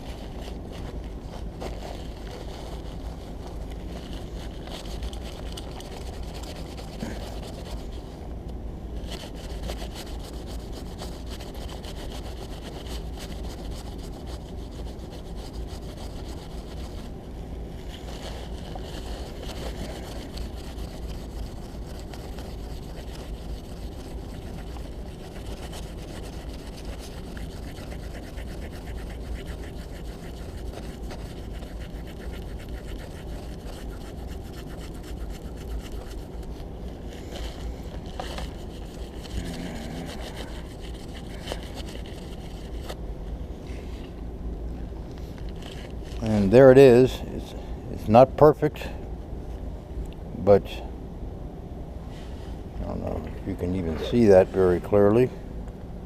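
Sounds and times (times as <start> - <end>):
paper towel scrubbing a board: 0.0 - 8.0, 9.0 - 17.1, 17.8 - 43.0.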